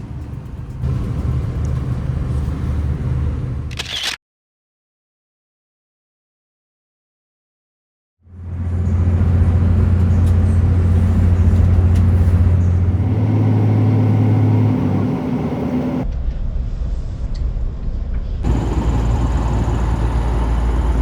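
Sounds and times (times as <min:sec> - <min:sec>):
diesel train engine drone: 0:00.0 - 0:03.8, 0:08.2 - 0:16.1, 0:18.4 - 0:21.0.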